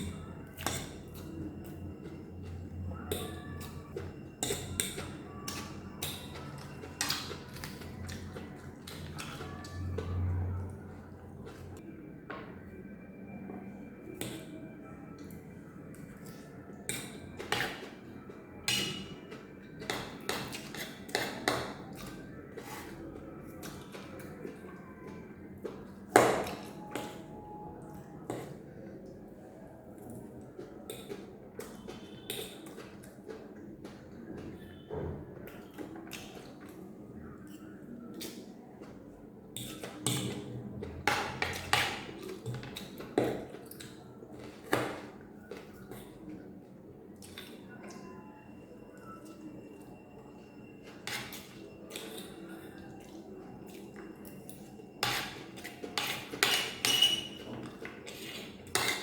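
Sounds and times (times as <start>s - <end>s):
cutlery scraping a plate: 18.7s - 19.2s, 19.8s - 23.0s, 55.0s - 59.0s.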